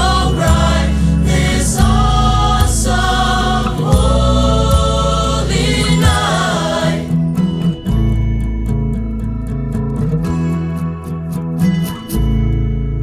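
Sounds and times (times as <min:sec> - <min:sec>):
choir singing sustained chords: 0:00.0 - 0:07.8
instrumental backing with bass: 0:00.0 - 0:13.0.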